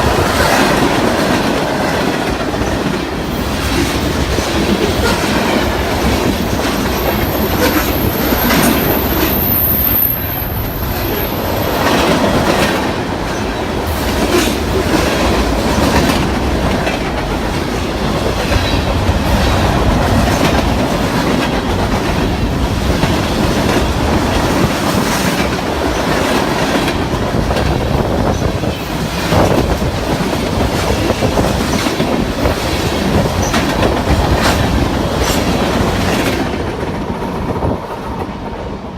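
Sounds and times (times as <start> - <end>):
train wheels clacking over rail joints: 10.8 - 38.4.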